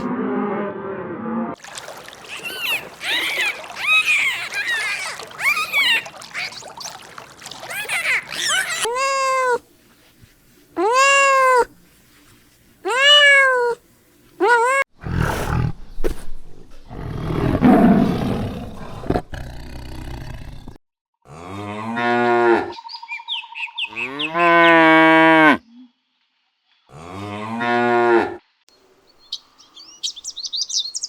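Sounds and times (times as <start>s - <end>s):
high chirping: 2.3s - 9.6s
cat meowing: 7.8s - 9.6s, 10.8s - 11.7s, 12.8s - 13.8s, 14.4s - 14.9s
big cat roaring: 15.0s - 22.2s.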